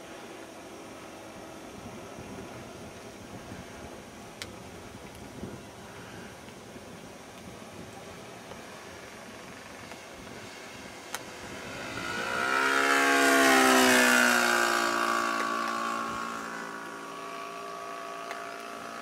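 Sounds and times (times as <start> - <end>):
propeller plane flying past: 8.1 - 19.0.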